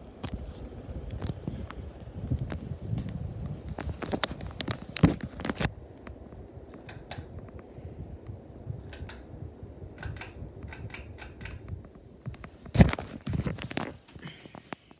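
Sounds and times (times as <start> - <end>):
ceiling fan humming: 0.0 - 14.9
sharp clicks: 6.7 - 7.4, 8.9 - 9.4, 10.0 - 11.8.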